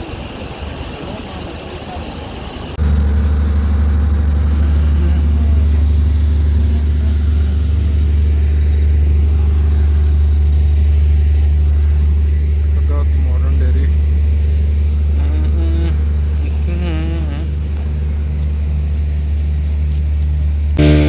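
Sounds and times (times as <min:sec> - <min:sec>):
faint high whine: 0:00.0 - 0:17.4, 0:20.8 - 0:21.0
motor humming loudly: 0:02.8 - 0:19.0, 0:20.8 - 0:21.0.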